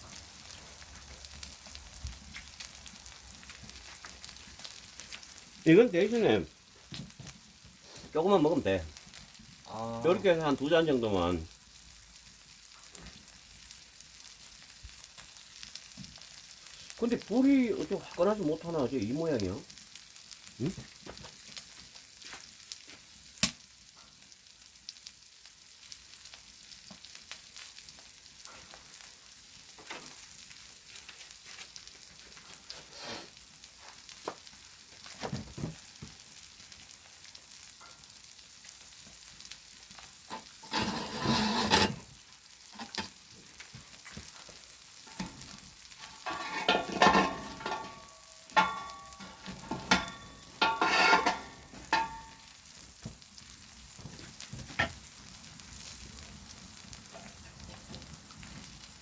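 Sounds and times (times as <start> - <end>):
meat sizzling on stone slab: 0.0 - 59.0
sharp pops: 23.4 - 23.6
handling noise: 46.0 - 52.4.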